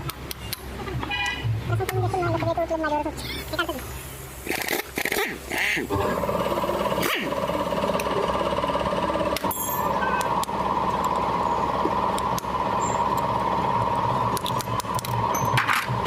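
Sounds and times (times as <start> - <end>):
steady mechanical hum: 0.0 - 16.0
sharp clicks: 12.1 - 13.3, 14.3 - 15.2.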